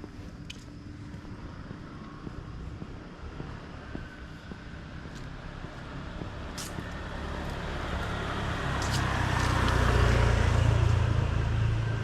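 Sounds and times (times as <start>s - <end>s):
vehicle passing close: 5.8s - 12.0s.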